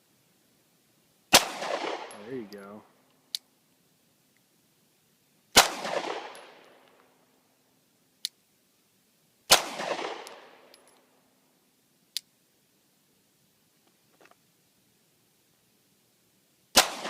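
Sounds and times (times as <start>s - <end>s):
pistol shots with echo: 1.3s - 2.3s, 5.6s - 6.7s, 9.5s - 10.7s, 16.8s - 17.0s.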